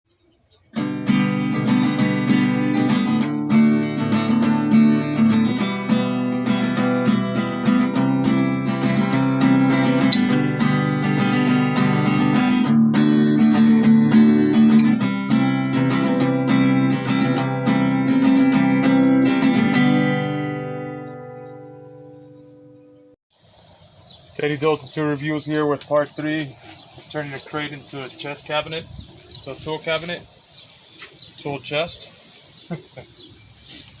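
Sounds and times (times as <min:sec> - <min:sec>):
strummed acoustic guitar: 0:00.6 - 0:23.2.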